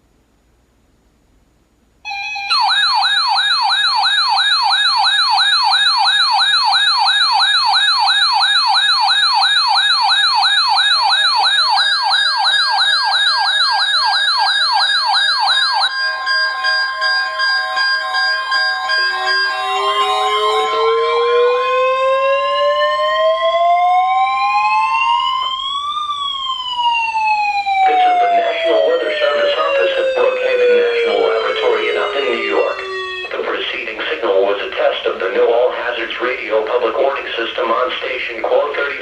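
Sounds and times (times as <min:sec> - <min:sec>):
electronic siren wailing: 0:02.1 - 0:33.5
high alert tones: 0:14.7 - 0:22.0.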